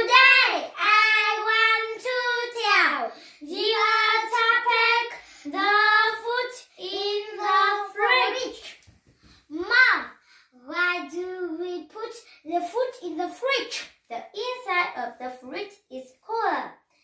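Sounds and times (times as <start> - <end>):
child singing in a high voice: 0.0 - 8.6.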